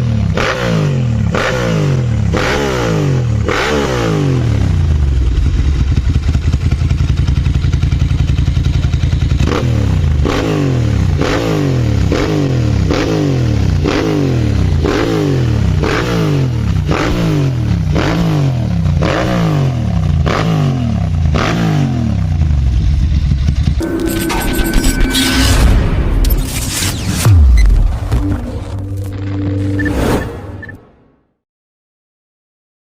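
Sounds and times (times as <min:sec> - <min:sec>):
motorcycle engine revving: 0:00.0 - 0:25.3.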